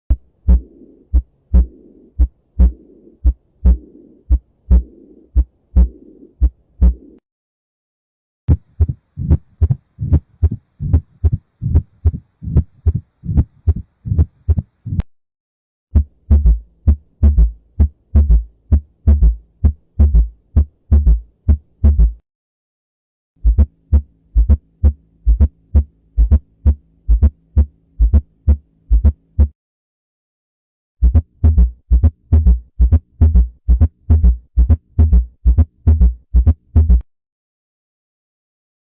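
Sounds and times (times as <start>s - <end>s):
faint steady hum: 0.1s - 7.2s, 8.5s - 15.0s, 23.4s - 29.4s
heartbeat through stethoscope: 0.1s - 7.2s, 8.5s - 15.0s, 16.0s - 22.2s, 23.4s - 29.6s, 31.0s - 37.0s.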